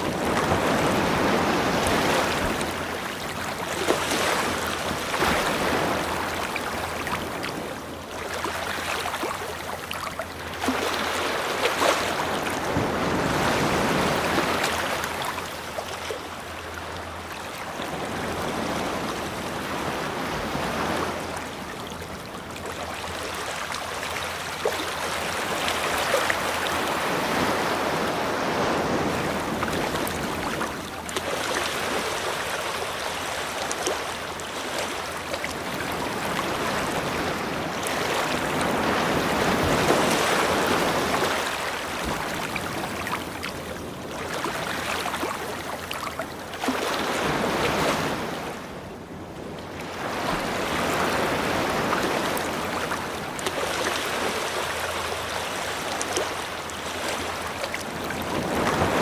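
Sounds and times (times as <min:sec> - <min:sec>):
ocean waves washing onto beach: 0:00.0 - 0:59.0.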